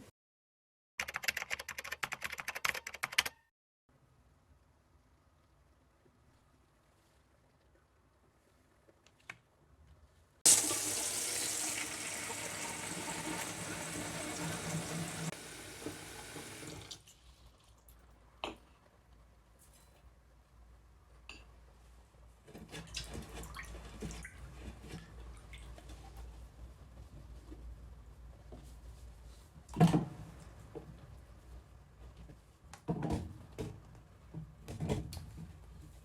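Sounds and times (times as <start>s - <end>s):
tap water running into sink: 10.5s - 17.0s.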